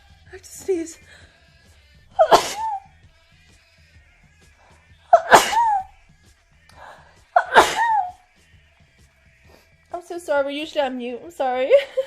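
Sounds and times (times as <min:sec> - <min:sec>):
person sneezing: 0:02.2 - 0:02.9, 0:05.1 - 0:05.9, 0:07.4 - 0:08.2.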